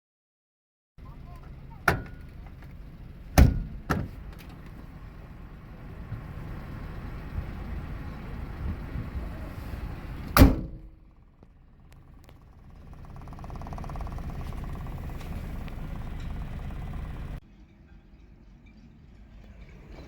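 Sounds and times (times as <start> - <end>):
car engine idling: 1.0 - 17.4
car doors shutting: 1.3 - 11.0.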